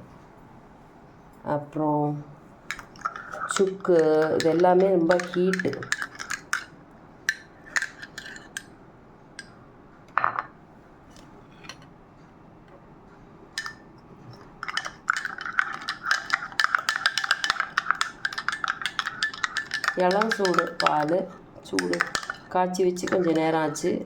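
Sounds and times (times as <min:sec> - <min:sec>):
spoon clinking in a cup: 0:02.7 - 0:06.7, 0:07.3 - 0:08.7, 0:13.6 - 0:23.9
clinks and taps: 0:10.1 - 0:10.5.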